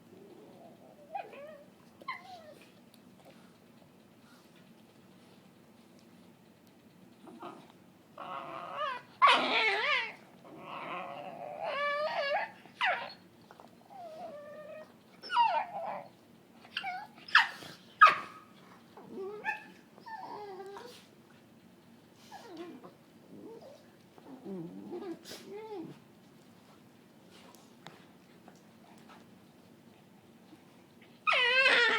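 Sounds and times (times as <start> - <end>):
dog whining and yipping: 1.0 - 2.7, 8.2 - 18.5, 19.1 - 21.0, 31.2 - 31.9.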